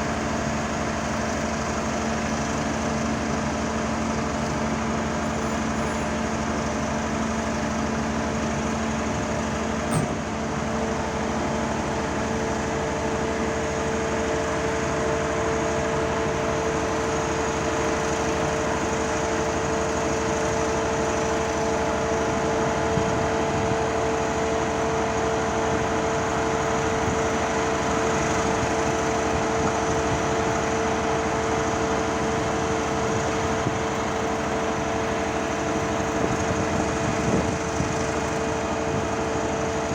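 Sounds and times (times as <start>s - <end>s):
pile driver machine drone: 0.0s - 39.9s
short knock: 9.9s - 10.2s.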